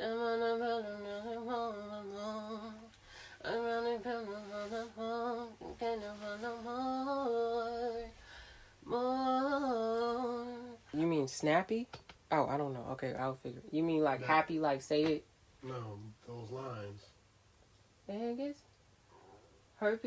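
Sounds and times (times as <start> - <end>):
breaths: 3.0 - 3.4, 8.1 - 8.8.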